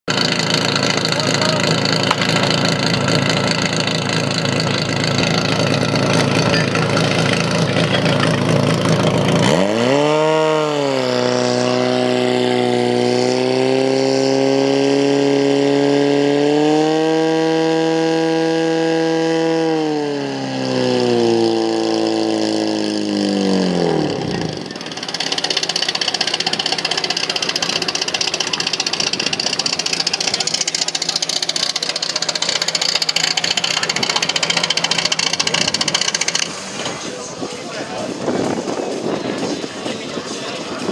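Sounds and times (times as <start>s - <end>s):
pump engine running hard: 0.1s - 40.9s.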